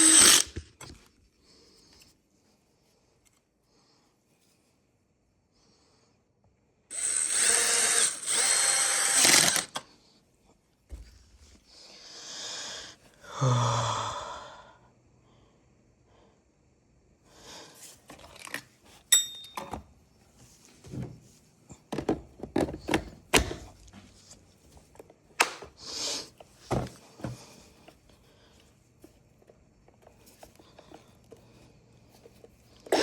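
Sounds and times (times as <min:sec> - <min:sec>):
tools and small parts clicking: 0:18.3 - 0:19.8
short metallic ring: 0:19.1 - 0:19.7.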